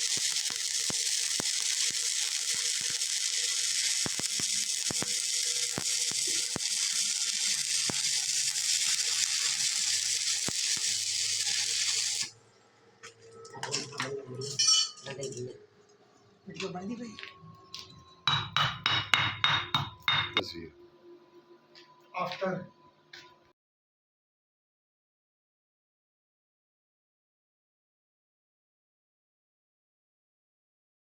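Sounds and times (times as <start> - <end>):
welding arc hissing and crackling: 0.0 - 12.4.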